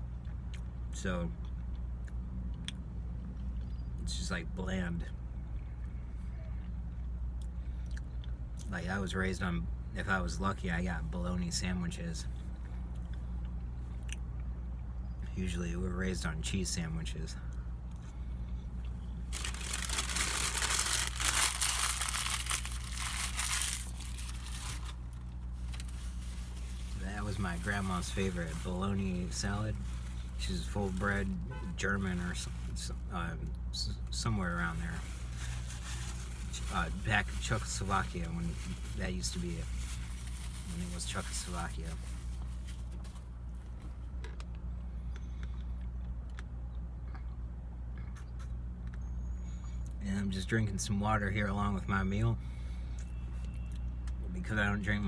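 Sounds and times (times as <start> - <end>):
low hum: 16.9 - 39.0
paper wrapper crinkling: 19.3 - 31.2, 34.5 - 43.3.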